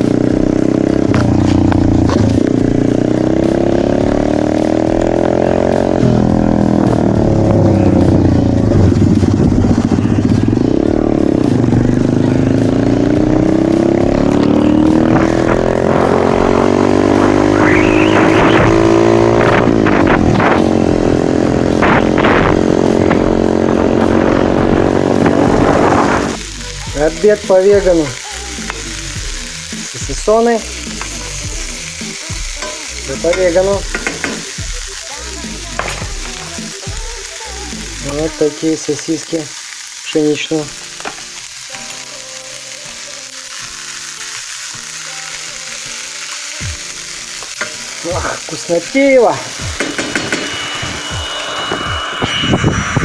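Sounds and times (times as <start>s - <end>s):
motorcycle engine revving: 0.0s - 38.4s.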